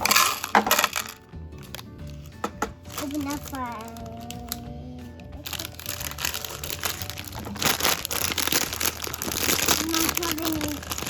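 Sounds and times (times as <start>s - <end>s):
plastic bag tearing and crinkling: 0.0s - 4.6s, 5.4s - 11.0s
plastic bricks clicking: 0.0s - 4.7s.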